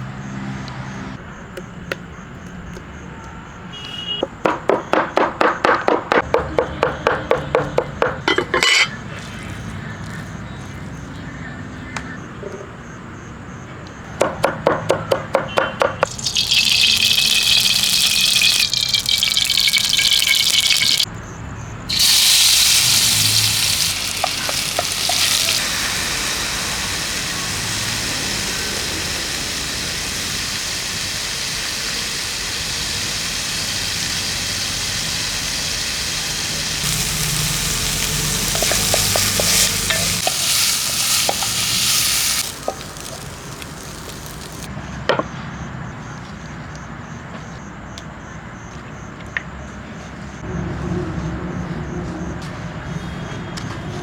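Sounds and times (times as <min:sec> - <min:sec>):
loud steady hiss: 0:16.0 - 0:21.1, 0:21.9 - 0:44.7.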